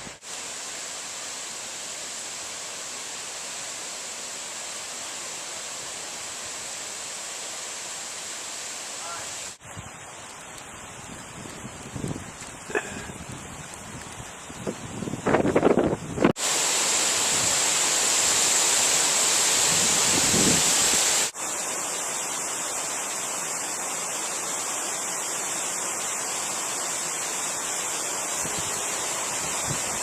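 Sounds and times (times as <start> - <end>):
blizzard wind hissing: 10.8 - 30.0.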